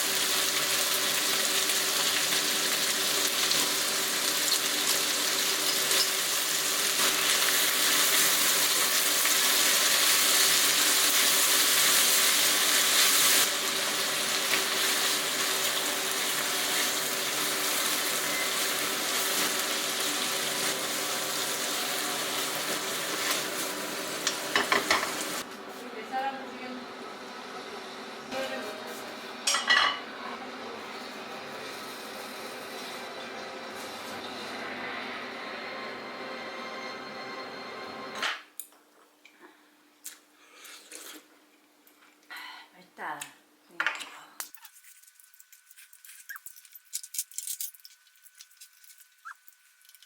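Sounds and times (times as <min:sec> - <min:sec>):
food sizzling in a frying pan: 0:00.0 - 0:25.5.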